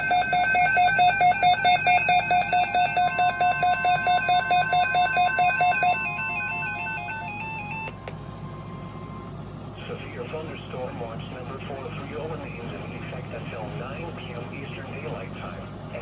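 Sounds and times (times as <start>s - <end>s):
rapid electronic beeping: 0.0s - 8.0s
steady alarm tone: 0.0s - 9.6s.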